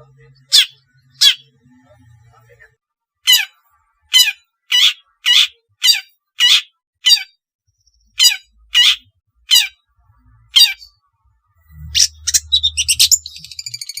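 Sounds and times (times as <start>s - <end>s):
bird giving harsh rasping calls: 0.4s - 1.5s, 3.2s - 7.4s, 8.2s - 9.8s, 10.5s - 11.0s, 11.8s - 14.0s.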